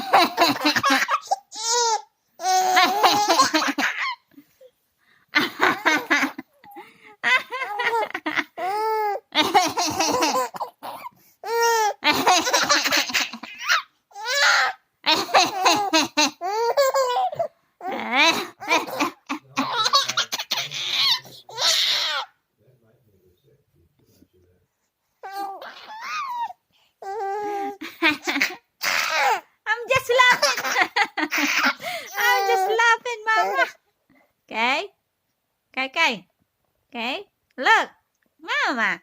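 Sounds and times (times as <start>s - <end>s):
baby laughing: 0.0s - 4.4s, 5.4s - 22.3s, 25.2s - 33.8s.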